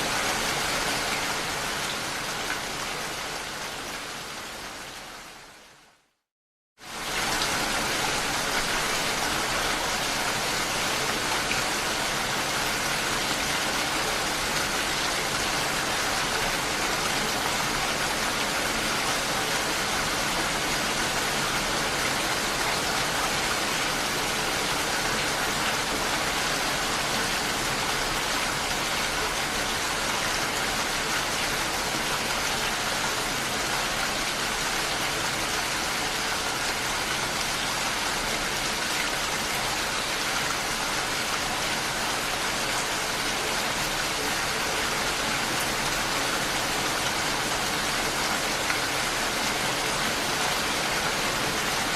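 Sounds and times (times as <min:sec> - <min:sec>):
steady rain hiss: 0:06.8 - 0:51.9.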